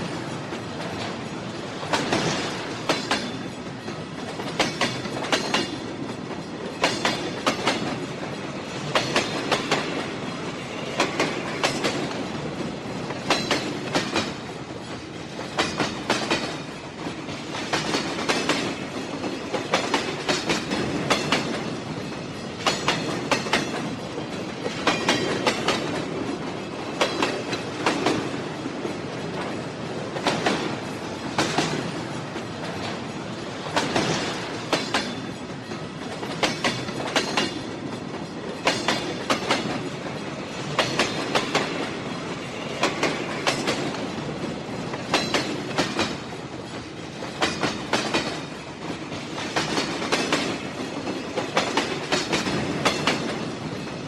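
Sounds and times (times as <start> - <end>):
train rumble: 0.0 - 54.0
train wheels clicking over rail joints: 0.0 - 54.0.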